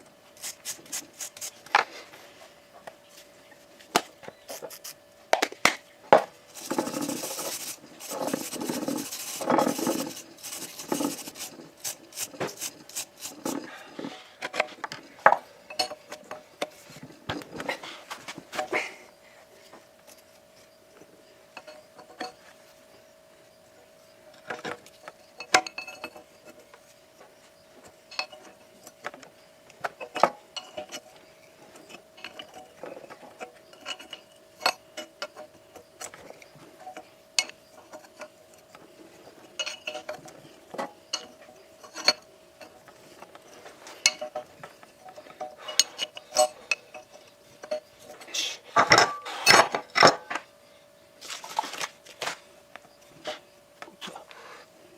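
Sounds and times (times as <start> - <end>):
faint steady hum: 0.0 - 54.9
metal parts clinking: 39.5 - 42.9, 43.6 - 48.2.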